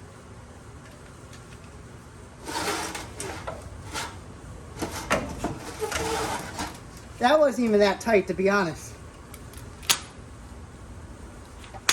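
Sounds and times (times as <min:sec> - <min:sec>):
metal tools scraping and rattling: 0:04.8 - 0:06.8.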